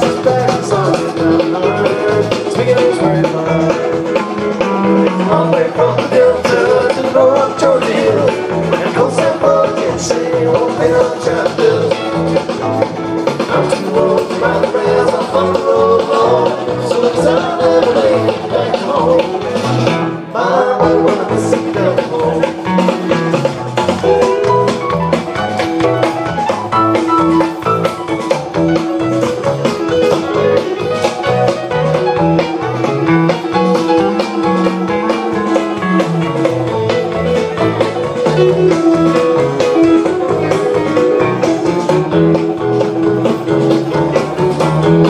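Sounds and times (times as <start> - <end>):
rock band playing live: 0.0 - 45.0.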